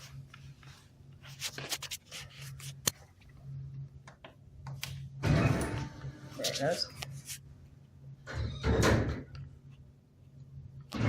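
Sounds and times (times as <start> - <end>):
vending machine humming: 3.4 - 9.6.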